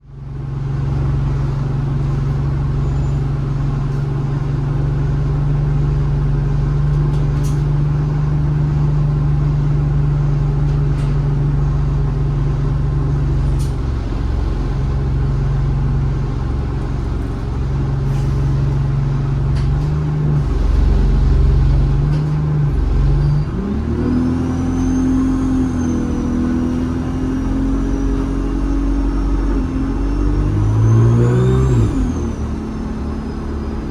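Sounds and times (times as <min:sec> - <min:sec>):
bus engine idling and revving: 0:00.0 - 0:33.9
turbocharger whistle: 0:22.8 - 0:33.9.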